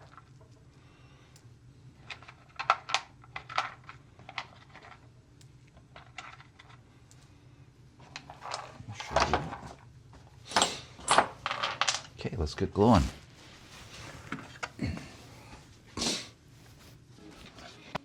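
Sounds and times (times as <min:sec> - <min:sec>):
hardware rattling clatter: 0:10.5 - 0:12.1.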